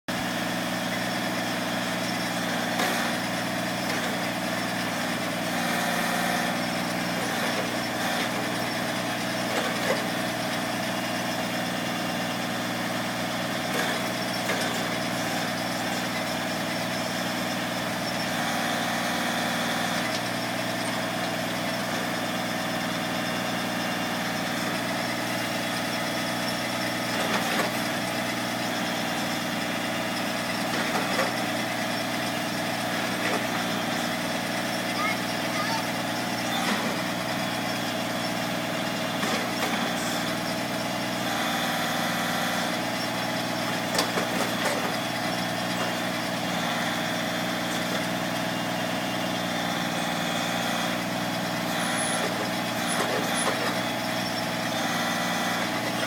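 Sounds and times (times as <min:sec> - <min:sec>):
backhoe engine running: 0:00.1 - 0:56.0.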